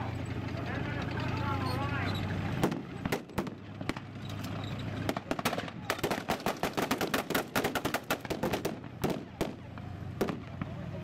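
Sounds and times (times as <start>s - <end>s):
blank gunshots: 5.1s - 9.6s
rapid gunfire bursts: 5.1s - 9.6s.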